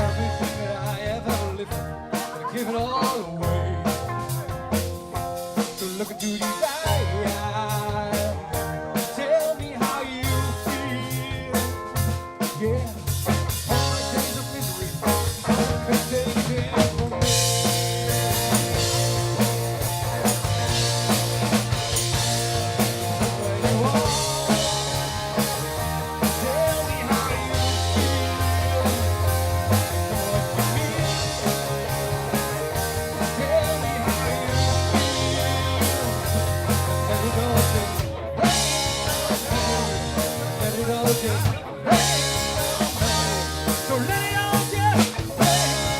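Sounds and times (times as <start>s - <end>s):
rock band playing: 0.0s - 45.9s.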